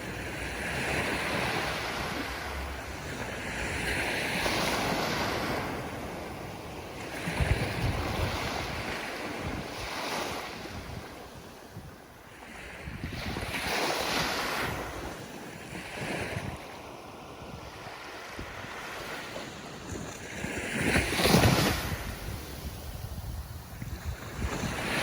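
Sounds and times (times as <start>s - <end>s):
ocean waves washing in: 0.0s - 11.6s, 12.2s - 25.0s
wind rumble on microphone: 0.0s - 25.0s.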